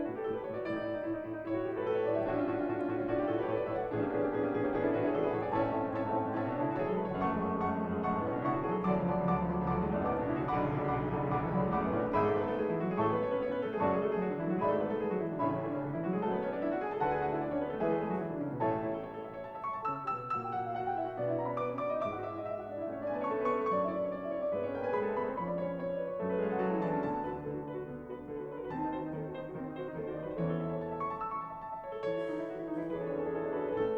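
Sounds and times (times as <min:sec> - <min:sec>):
classical piano piece: 0:00.0 - 0:33.9.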